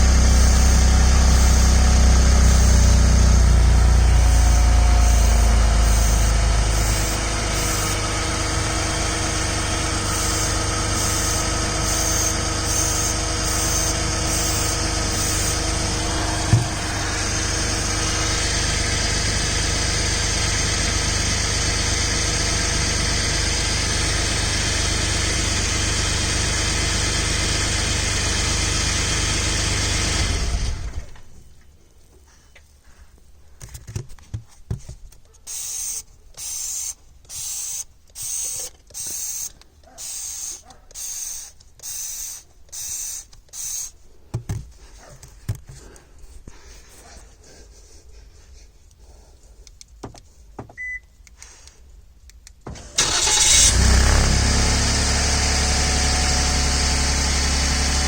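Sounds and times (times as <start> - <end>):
car exhaust rumbling at idle: 0.0 - 29.8, 53.2 - 58.0.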